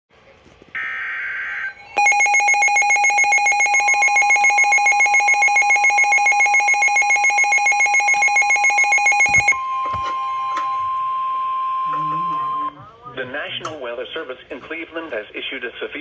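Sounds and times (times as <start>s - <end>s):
steady warning tone: 0.8s - 12.8s
rapid alarm beeping: 2.0s - 10.0s.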